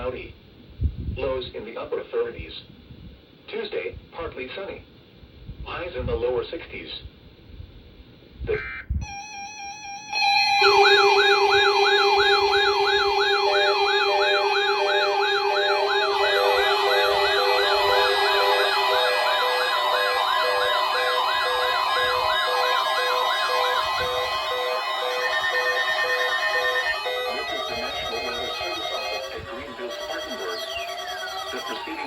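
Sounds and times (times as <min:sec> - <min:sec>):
steady and beeping alarm tones: 0:09.0 - 0:32.0
warbling siren-like alarm sweeps: 0:09.0 - 0:32.0.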